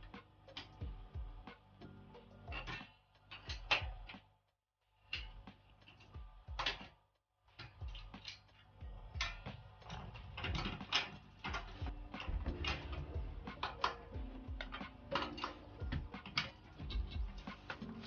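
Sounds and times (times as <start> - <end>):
metallic clicks of hand tools: 2.5 - 4.2, 7.6 - 18.0
ratchet clicking: 7.5 - 18.0.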